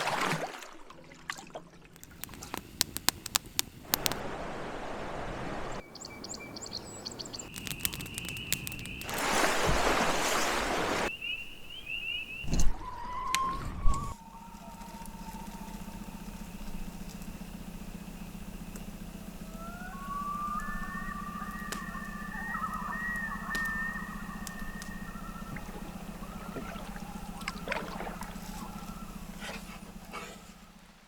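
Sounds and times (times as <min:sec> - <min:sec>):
vehicle engine humming: 0:02.0 - 0:04.2, 0:05.8 - 0:09.4, 0:14.2 - 0:31.0.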